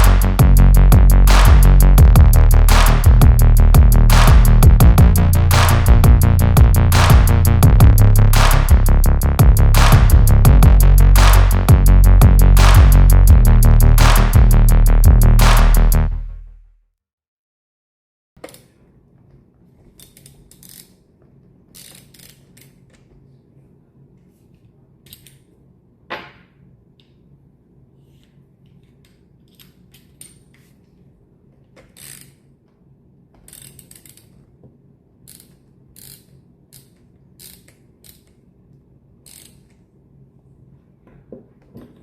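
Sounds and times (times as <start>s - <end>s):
sharp knock: 0.0s - 16.0s
steady low hum: 0.0s - 16.4s
hand tools and small parts clicking: 19.9s - 21.0s, 21.7s - 23.0s, 25.0s - 25.5s, 28.2s - 30.9s, 31.7s - 32.4s, 33.3s - 34.5s, 35.2s - 38.4s, 39.2s - 39.8s.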